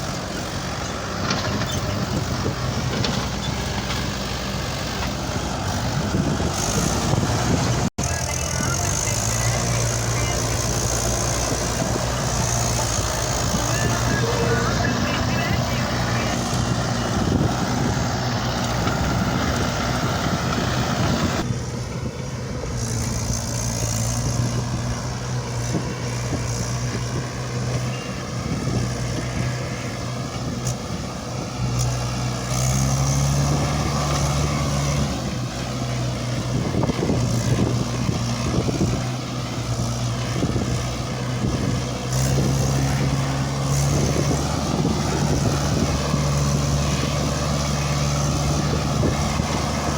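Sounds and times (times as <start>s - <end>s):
diesel engine revving: 0.0s - 49.9s.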